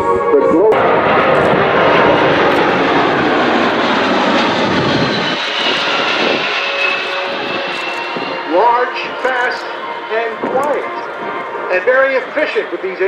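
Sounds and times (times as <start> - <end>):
jet engine rush: 0.0 - 13.0
thin high whine: 4.4 - 11.8.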